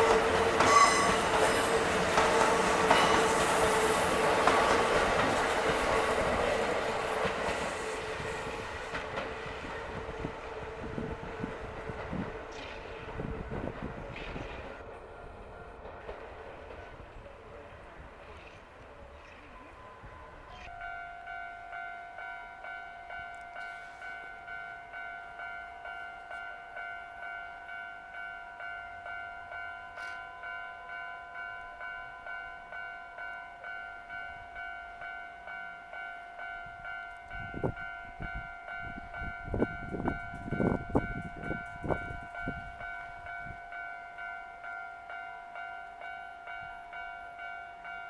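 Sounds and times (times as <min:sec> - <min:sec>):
level crossing alarm ringing: 0:00.0 - 0:01.8
train wheels over rail joints: 0:00.0 - 0:20.8, 0:36.8 - 0:44.8.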